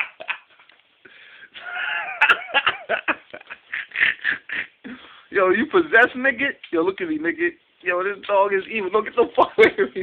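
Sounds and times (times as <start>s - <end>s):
man laughing breathlessly: 0.0s - 5.3s.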